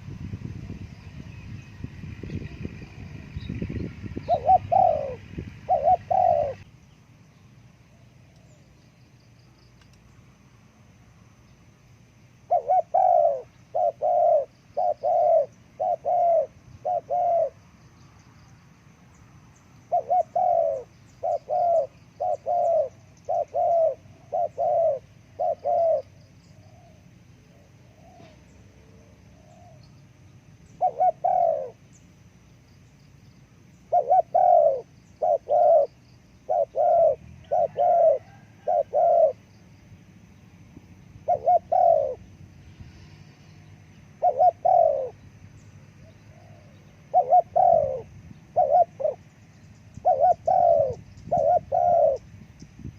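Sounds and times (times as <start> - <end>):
dove cooing: 2.4 - 6.7, 12.4 - 17.6, 19.9 - 29.9, 30.6 - 32.0, 33.7 - 39.5, 41.1 - 42.4, 43.4 - 45.2, 46.0 - 52.4.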